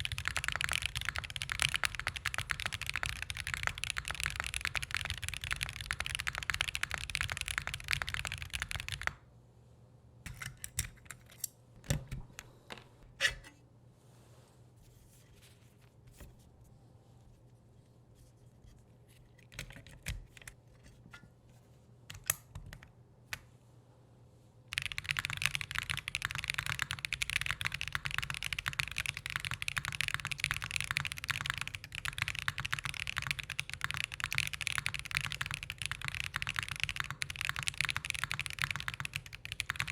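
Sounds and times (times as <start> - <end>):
fast mechanical keyboard typing: 0.0 - 9.2, 24.7 - 39.9
keyboard clicks: 0.0 - 9.2, 24.7 - 39.9.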